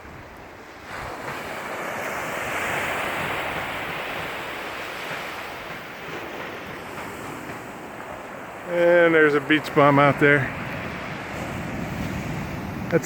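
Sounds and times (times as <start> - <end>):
wave breaking on beach: 0.0 - 13.0
wind on microphone: 10.2 - 13.0.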